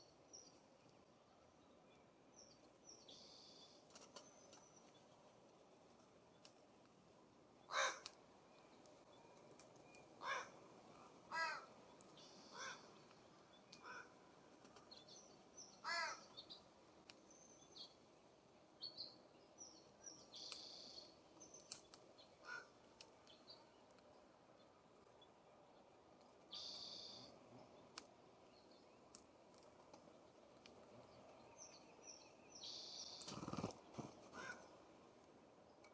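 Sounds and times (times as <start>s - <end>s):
small birds high chirps: 0.0s - 5.4s, 7.6s - 14.1s, 14.7s - 18.0s, 18.7s - 34.8s
jay harsh raspy calls: 34.4s - 34.6s.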